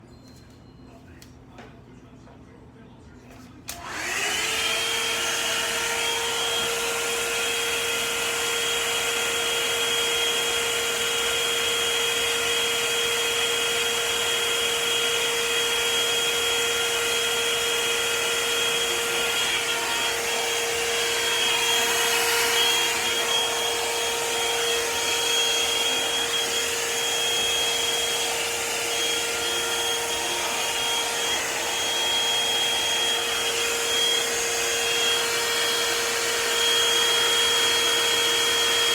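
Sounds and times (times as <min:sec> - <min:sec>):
hair dryer motor whine and air: 0:03.7 - 0:38.9.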